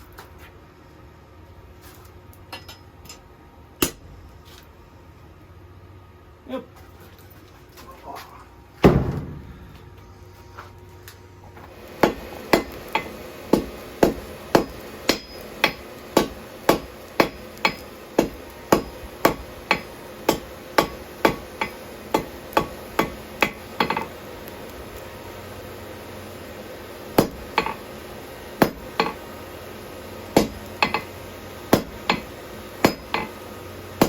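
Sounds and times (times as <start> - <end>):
hammer striking steel on anvil: 2.5 - 3.2, 3.8 - 4.1, 12.0 - 24.1, 27.2 - 27.8, 28.6 - 29.2, 30.4 - 33.4
heavy thud: 8.8 - 10.0.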